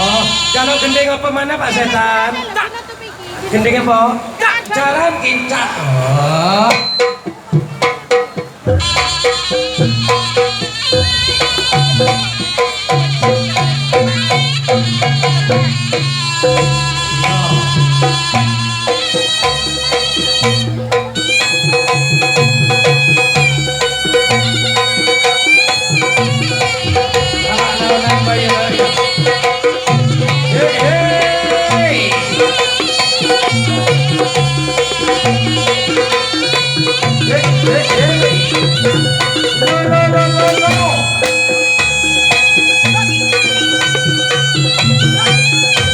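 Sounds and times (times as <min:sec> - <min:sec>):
reedy wind instrument melody: 0:00.0 - 0:03.5, 0:04.7 - 0:45.9
steady held tone: 0:05.1 - 0:45.9
pitched gong percussion: 0:05.8 - 0:45.9
hand drums beating: 0:06.2 - 0:45.9.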